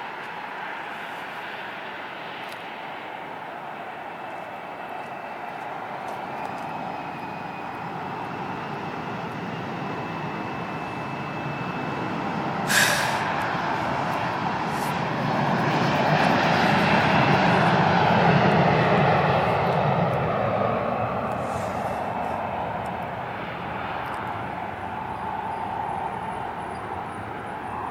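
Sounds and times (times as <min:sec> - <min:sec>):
airliner engines: 0:00.0 - 0:27.9
brief sharp burst of noise: 0:12.7 - 0:13.3
thin steady whine: 0:20.8 - 0:27.9.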